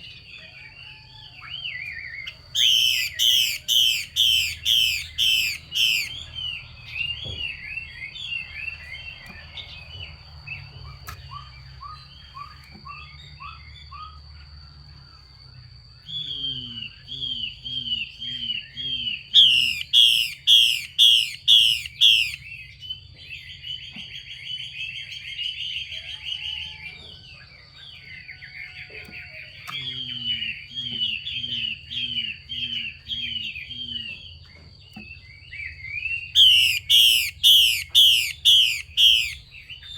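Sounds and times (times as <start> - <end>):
bird calls with down-slurred notes: 0.0 - 14.5, 16.0 - 39.9
harsh rasping bird calls: 1.7 - 7.2, 16.1 - 22.7, 36.1 - 39.9.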